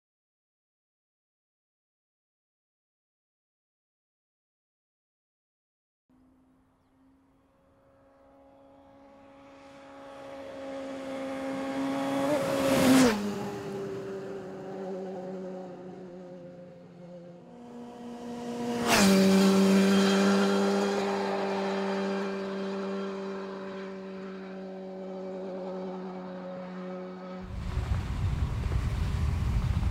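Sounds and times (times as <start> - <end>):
motorcycle passing by: 6.2 - 29.9.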